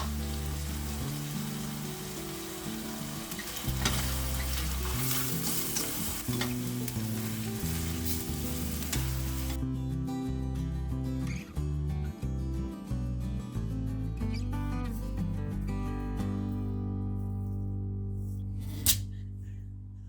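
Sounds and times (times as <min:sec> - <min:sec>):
food sizzling in a pan: 0:00.0 - 0:09.6.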